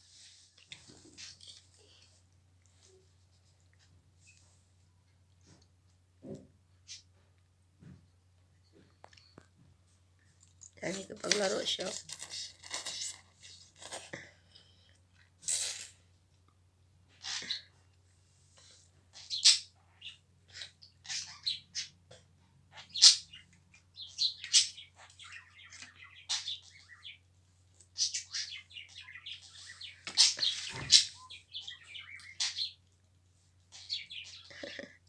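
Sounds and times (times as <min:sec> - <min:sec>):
bird chirping and squawking: 0:19.2 - 0:22.0, 0:22.8 - 0:27.2, 0:28.0 - 0:32.8, 0:33.7 - 0:34.8.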